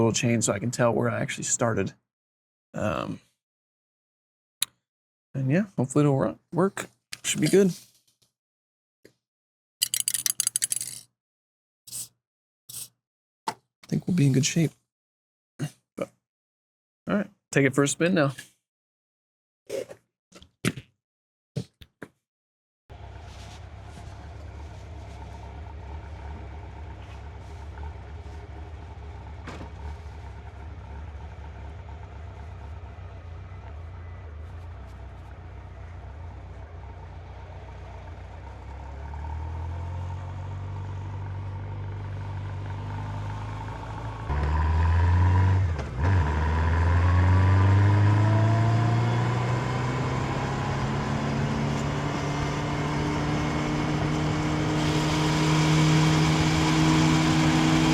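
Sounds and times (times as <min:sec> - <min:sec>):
motorcycle engine idling and accelerating: 0:22.9 - 0:57.9.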